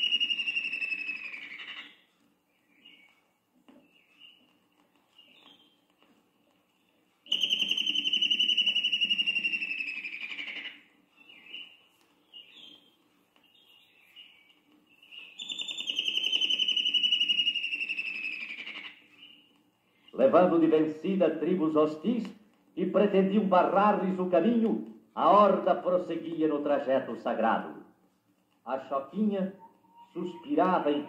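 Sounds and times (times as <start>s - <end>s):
soft short bird calls: 0.0s - 3.2s, 5.1s - 5.8s, 7.3s - 20.2s, 29.5s - 31.0s.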